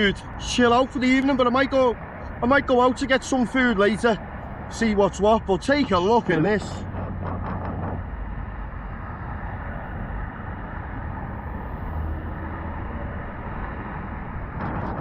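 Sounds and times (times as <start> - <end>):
street hubbub: 0.0 - 9.6
vehicle engines humming: 0.0 - 15.0.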